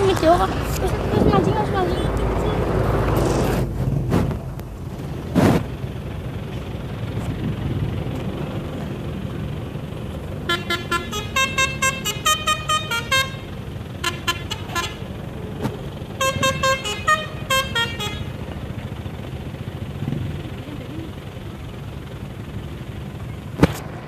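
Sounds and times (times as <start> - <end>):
bus engine rumble: 0.0 - 24.0
multi-tone bus horn tune: 10.3 - 15.4, 16.0 - 18.8.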